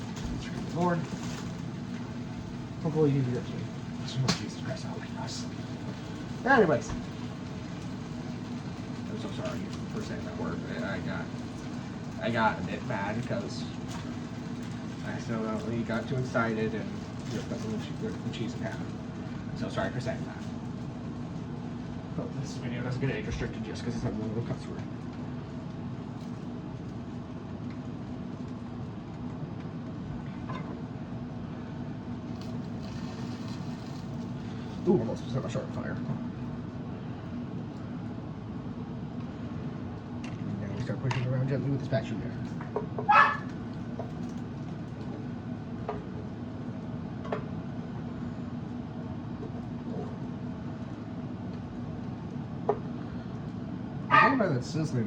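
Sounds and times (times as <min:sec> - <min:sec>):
bread sizzling in a frying pan: 0:00.0 - 0:22.2, 0:31.8 - 0:35.3
low steady hum: 0:00.0 - 0:55.0.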